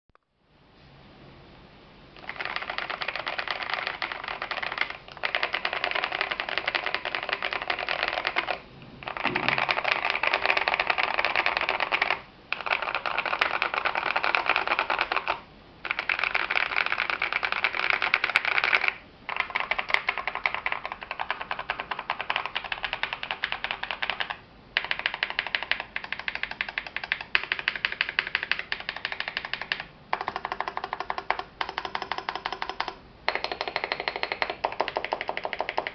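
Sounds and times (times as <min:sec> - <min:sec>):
mechanical keyboard key clacks: 0:02.2 - 0:35.9.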